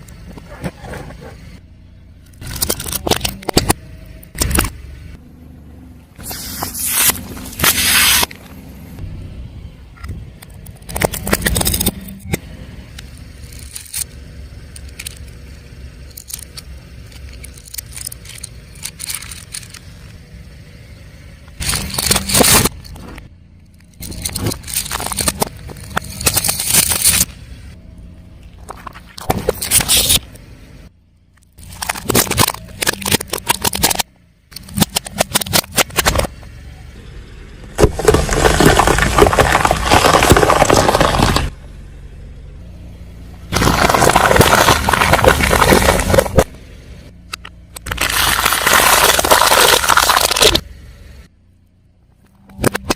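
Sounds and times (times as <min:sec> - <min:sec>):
low engine rumble: 0:00.0 - 0:52.9
tyre crushing brittle objects: 0:02.4 - 0:03.8, 0:10.8 - 0:12.2, 0:21.6 - 0:23.1, 0:24.0 - 0:27.3, 0:31.6 - 0:36.3, 0:37.8 - 0:41.5, 0:43.5 - 0:46.5, 0:47.8 - 0:50.6.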